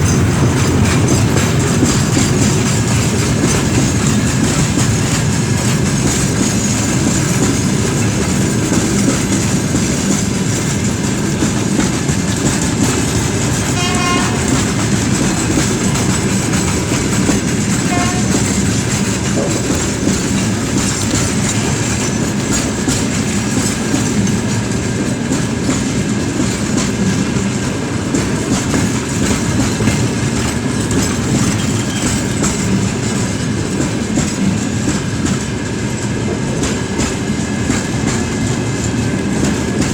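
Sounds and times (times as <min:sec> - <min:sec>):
freight train rumbling past: 0:00.0 - 0:39.9
wagon wheels clattering on rails: 0:00.0 - 0:39.9.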